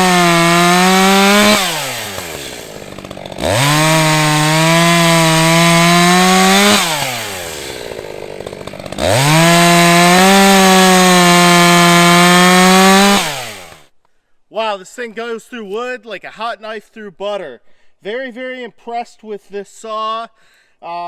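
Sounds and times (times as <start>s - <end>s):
chainsaw cutting wood: 0.0s - 13.9s.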